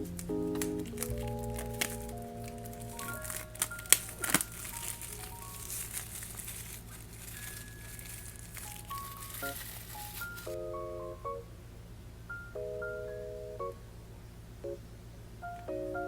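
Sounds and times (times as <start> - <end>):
packaging crinkling: 0.0 - 10.6.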